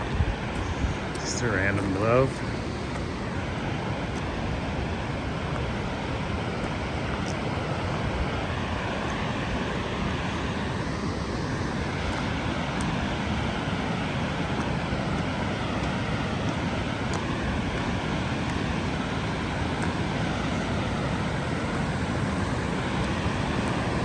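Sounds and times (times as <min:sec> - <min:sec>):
waterfall rushing: 0:00.0 - 0:03.8, 0:11.3 - 0:24.0.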